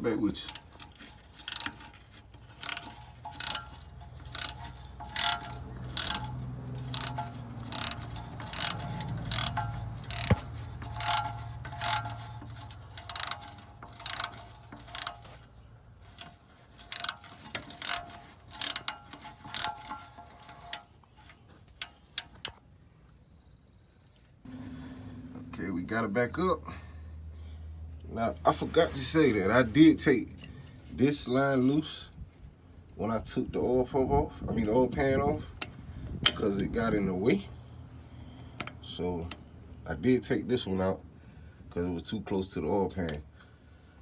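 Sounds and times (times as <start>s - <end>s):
hand ratchet clicking: 0.0s - 22.6s.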